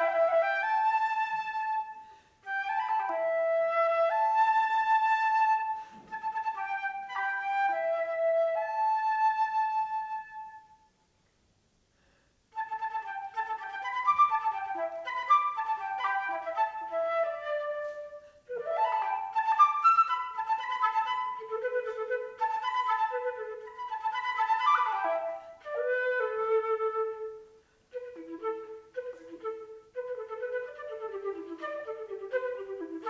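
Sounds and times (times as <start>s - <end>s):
solo flute playing runs: 0.0s - 10.9s, 12.5s - 33.0s.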